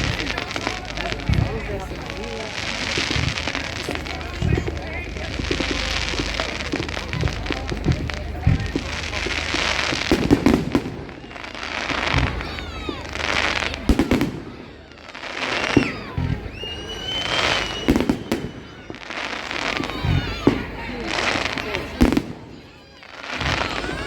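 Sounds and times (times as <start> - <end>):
fireworks bangs: 0.0 - 24.0
fireworks hissing and crackling: 0.0 - 24.0
whistles sliding in pitch: 15.8 - 18.9.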